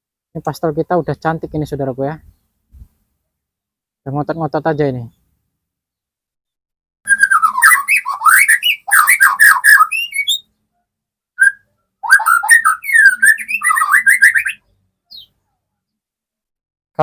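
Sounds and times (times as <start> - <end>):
bird singing in fast warbling phrases: 7.1 - 10.8, 11.4 - 16.0.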